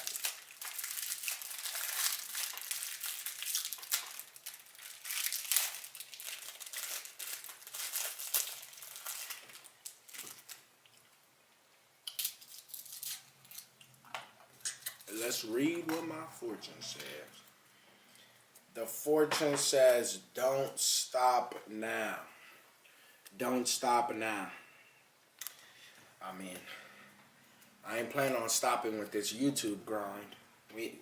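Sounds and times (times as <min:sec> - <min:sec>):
plastic wrapper crinkling and tearing: 0:00.0 - 0:11.3, 0:12.0 - 0:13.9, 0:14.6 - 0:16.0.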